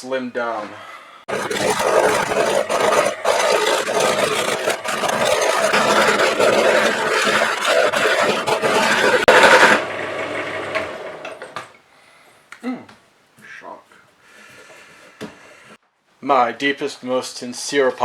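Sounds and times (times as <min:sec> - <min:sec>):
gouge cutting wood on lathe: 0:01.3 - 0:11.5
lathe motor humming: 0:01.3 - 0:11.5.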